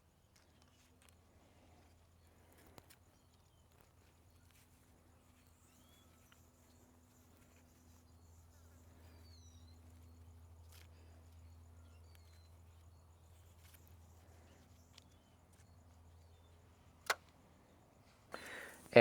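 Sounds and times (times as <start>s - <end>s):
faint bird chirps: 0.0s - 19.0s
small click: 17.0s - 17.4s.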